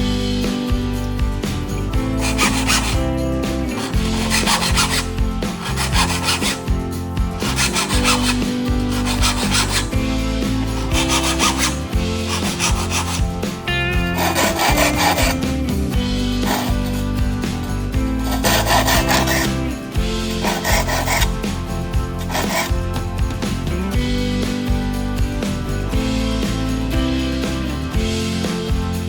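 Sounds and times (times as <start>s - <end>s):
background music: 0.0s - 29.0s
hand saw cutting wood: 1.6s - 15.8s, 16.4s - 22.8s.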